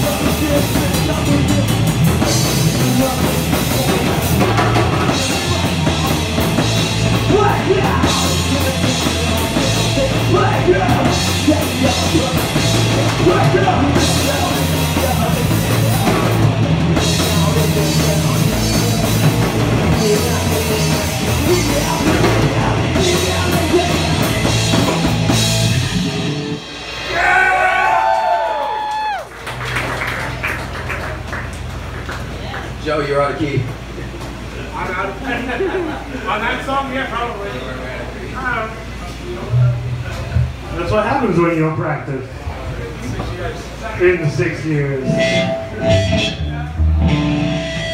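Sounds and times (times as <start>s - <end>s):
drum kit: 0.0s - 30.5s, 44.2s - 47.9s
rock band playing: 0.0s - 31.9s, 44.0s - 47.9s.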